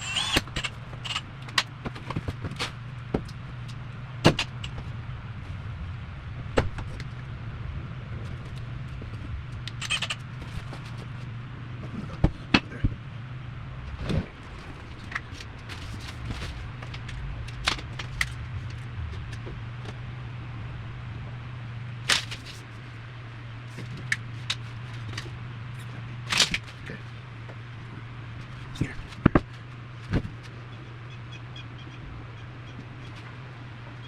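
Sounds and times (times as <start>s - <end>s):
steady low hum: 0.0s - 34.0s
sharp clicks: 9.7s - 10.2s.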